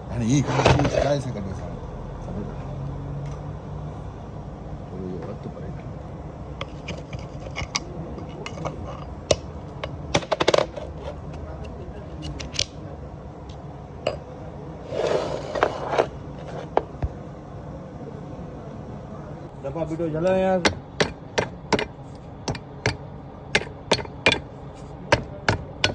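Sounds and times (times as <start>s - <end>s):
scraping rasp: 6.6s - 9.1s.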